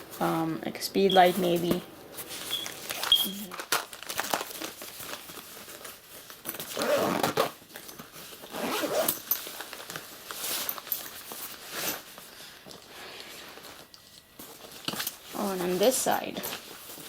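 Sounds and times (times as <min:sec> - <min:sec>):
zipper rasping: 0:06.7 - 0:07.6, 0:08.5 - 0:09.2.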